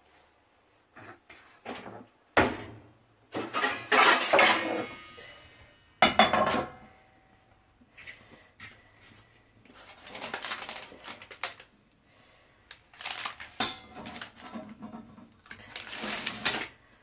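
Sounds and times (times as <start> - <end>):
metal cookware clanking: 3.4 - 6.8, 13.6 - 14.8.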